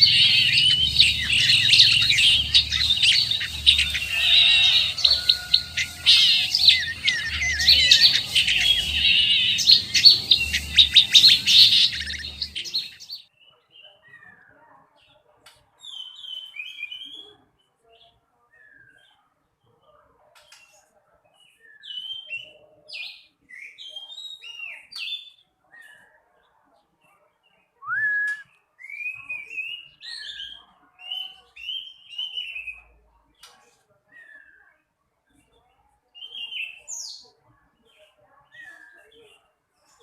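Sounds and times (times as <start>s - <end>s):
thrush singing twittering song: 0.0s - 15.2s.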